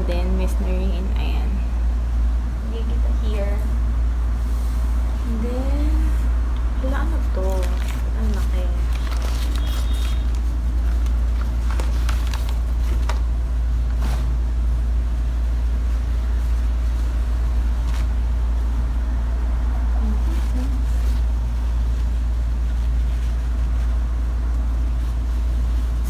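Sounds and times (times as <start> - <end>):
steady low rumble: 0.0 - 26.0
paper wrapping crinkling: 6.6 - 19.0, 20.0 - 26.0.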